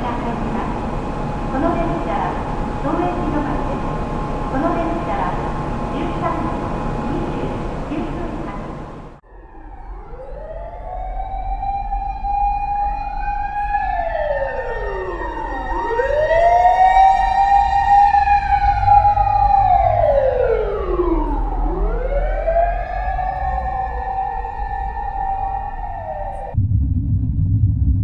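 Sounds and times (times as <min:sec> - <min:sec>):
siren wailing: 0:00.0 - 0:26.6
low rumble: 0:26.3 - 0:28.0.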